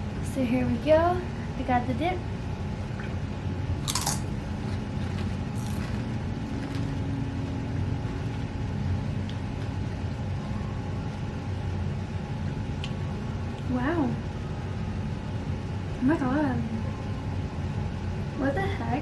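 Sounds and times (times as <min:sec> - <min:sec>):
faint steady hum: 0:00.0 - 0:19.0
crunch of chip being bitten: 0:03.8 - 0:09.8.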